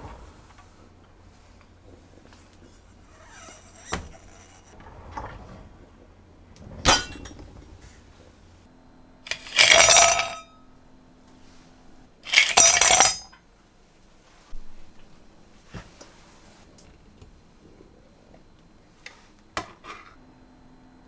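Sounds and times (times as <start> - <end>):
dishes and glassware clattering: 6.8 - 7.7, 12.3 - 13.4.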